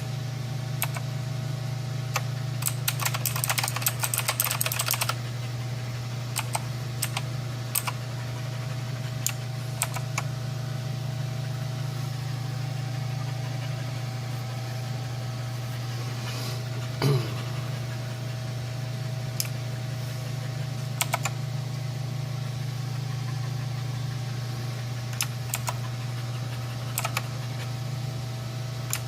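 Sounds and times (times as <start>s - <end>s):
steady low hum: 0.0s - 29.0s
mechanical keyboard typing: 0.8s - 1.0s, 2.1s - 5.2s, 6.4s - 8.0s, 9.2s - 10.3s, 21.0s - 21.3s, 25.2s - 25.8s, 26.9s - 27.2s.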